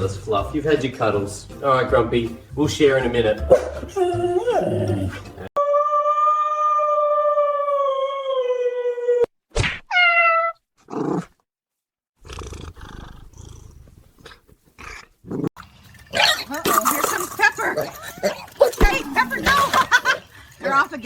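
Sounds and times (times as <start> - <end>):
cat yowling: 9.9 - 10.6.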